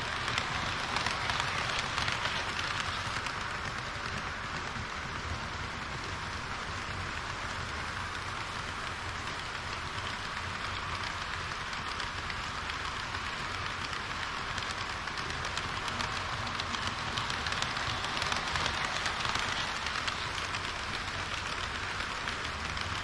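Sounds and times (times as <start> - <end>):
model train wheels rattling: 0.0 - 23.0.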